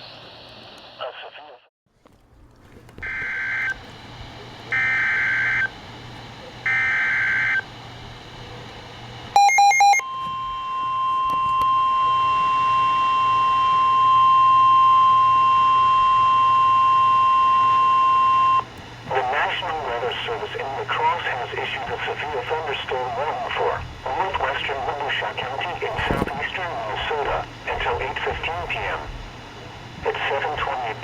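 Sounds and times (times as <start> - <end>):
long steady alarm tone: 3.0 - 18.8
sharp beeps: 9.4 - 18.6.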